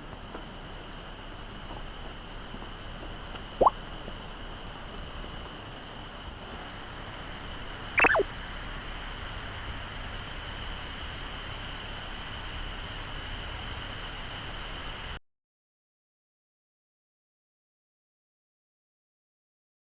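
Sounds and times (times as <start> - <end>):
water plop: 8.0 - 8.2.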